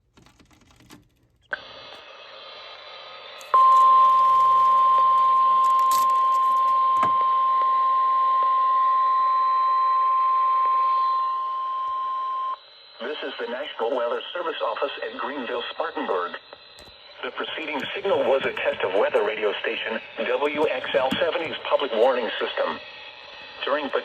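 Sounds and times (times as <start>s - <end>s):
radio hiss: 1.5s - 5.0s, 12.5s - 24.0s
steady high alarm tone: 3.4s - 24.0s.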